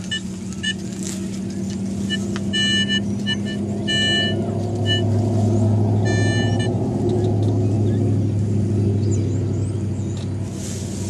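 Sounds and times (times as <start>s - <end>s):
metal detector short beeps: 0.0s - 0.9s, 2.0s - 5.1s, 6.0s - 6.7s
vehicle engine humming: 0.0s - 11.0s.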